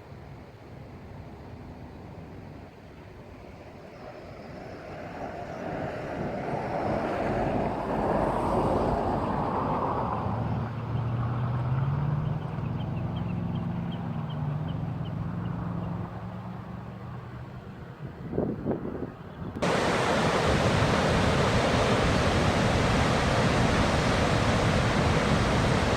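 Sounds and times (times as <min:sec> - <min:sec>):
road vehicle passing: 0:19.6 - 0:25.9.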